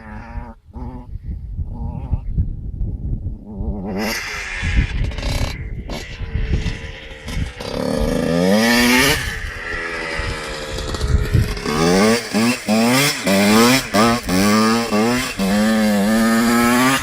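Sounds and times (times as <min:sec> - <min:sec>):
two-stroke motorbike engine revving: 0:03.6 - 0:17.0.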